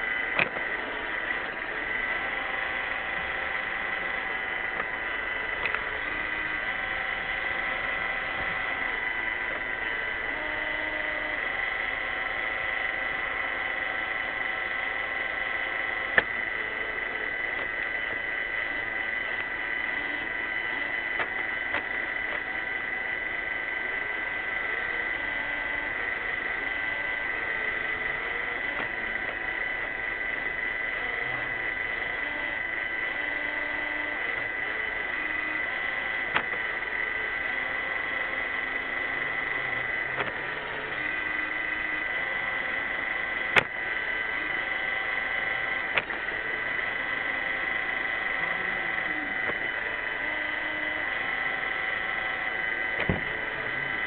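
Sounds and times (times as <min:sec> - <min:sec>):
sharp clicks: 0:00.0 - 0:08.8, 0:15.6 - 0:22.9, 0:32.0 - 0:44.8
robot vacuum whine: 0:00.0 - 0:54.0.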